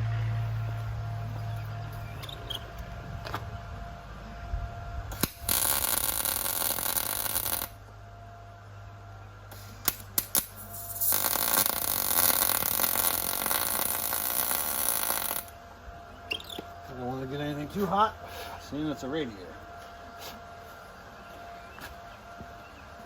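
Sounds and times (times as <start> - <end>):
welder steady hum: 0.0 - 23.0
welder arc crackling: 5.2 - 7.9, 9.8 - 15.6.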